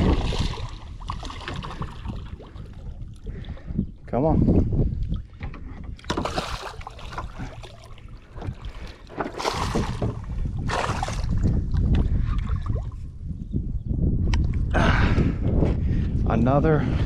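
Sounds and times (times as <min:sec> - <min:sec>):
wind rumble on microphone: 0:00.0 - 0:17.0
fish splashing at water surface: 0:06.1 - 0:07.9, 0:09.3 - 0:10.1.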